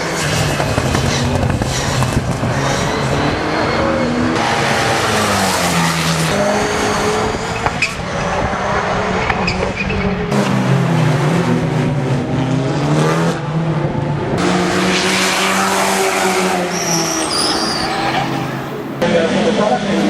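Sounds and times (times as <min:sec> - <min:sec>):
race car engine running hard: 0:10.3 - 0:16.9.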